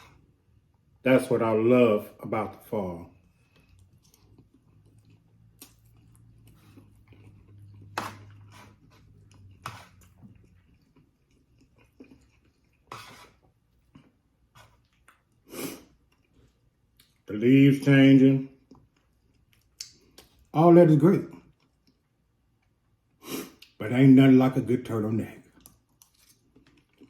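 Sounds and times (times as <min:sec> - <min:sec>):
person chewing food: 0:03.1 - 0:17.3, 0:18.6 - 0:20.5, 0:21.3 - 0:23.8, 0:25.5 - 0:27.0.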